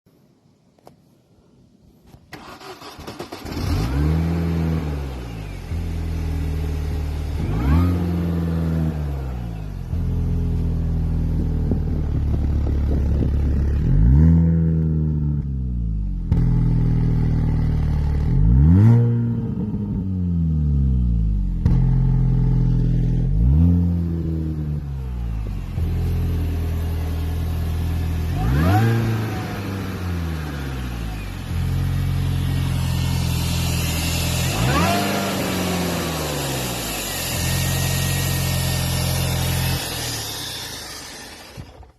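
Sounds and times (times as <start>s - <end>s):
car engine rough idle revving: 24.7s - 41.9s.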